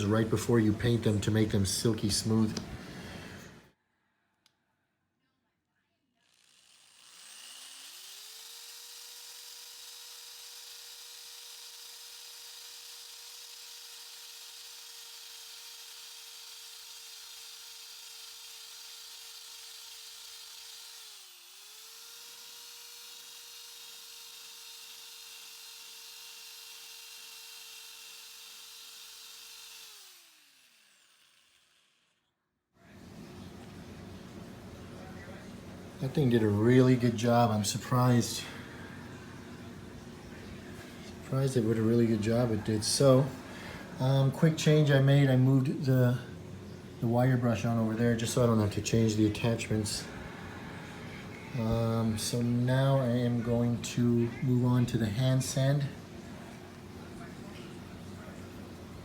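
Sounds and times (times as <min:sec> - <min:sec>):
electric drill grinding metal: 0:00.0 - 0:03.7, 0:06.2 - 0:32.3.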